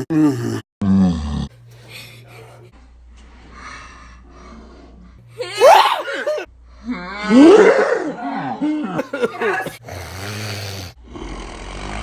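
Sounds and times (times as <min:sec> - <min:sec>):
man sneezing loudly: 0:05.4 - 0:06.5.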